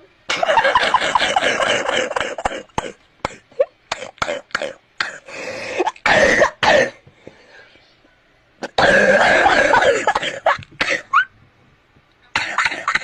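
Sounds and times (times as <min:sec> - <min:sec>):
child coughing: 0:06.1 - 0:07.0, 0:08.7 - 0:11.1, 0:12.4 - 0:13.0.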